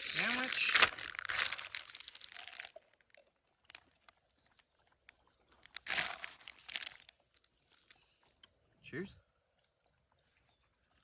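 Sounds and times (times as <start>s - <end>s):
potato chips crunching: 0.0s - 3.1s, 5.6s - 7.9s.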